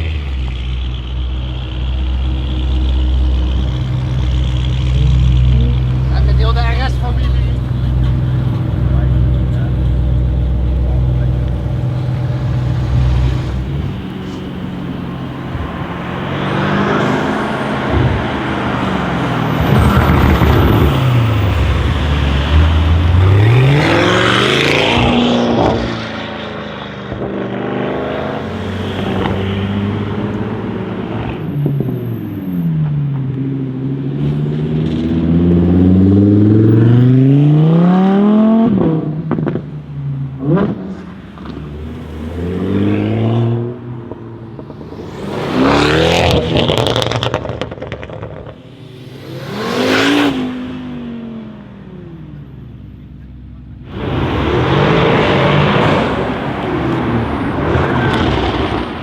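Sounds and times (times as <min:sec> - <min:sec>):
exhaust cracks: 0:00.0 - 0:26.0, 0:44.1 - 0:51.0, 0:53.8 - 0:59.0
car engine revving: 0:00.0 - 0:59.0.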